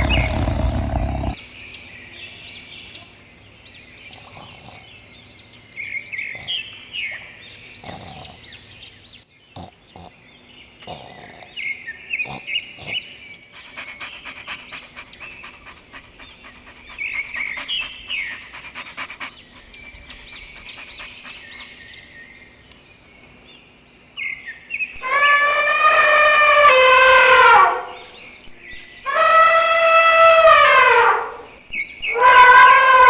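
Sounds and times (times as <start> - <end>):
birds chirping: 0.0 - 26.7, 27.7 - 32.7
loud horn-like call: 25.0 - 27.9, 29.1 - 31.4, 32.1 - 33.0.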